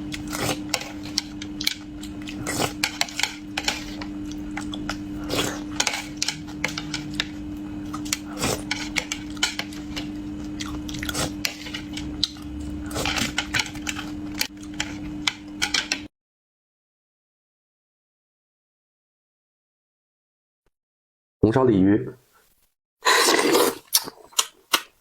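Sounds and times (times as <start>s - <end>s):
chewing and biting: 0.0s - 14.9s, 23.1s - 25.0s
steady low hum: 0.0s - 16.1s.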